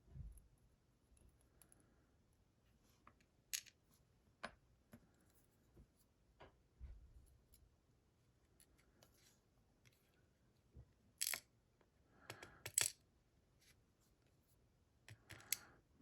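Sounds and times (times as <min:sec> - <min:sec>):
small metal lock parts clicking: 0:11.2 - 0:11.4, 0:12.4 - 0:13.0.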